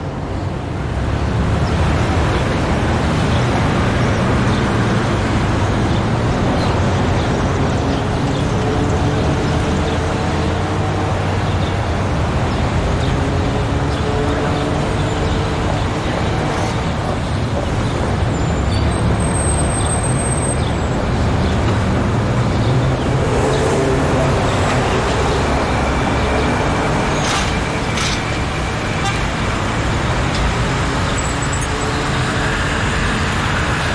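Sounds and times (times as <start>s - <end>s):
traffic rumble: 0.0s - 33.9s.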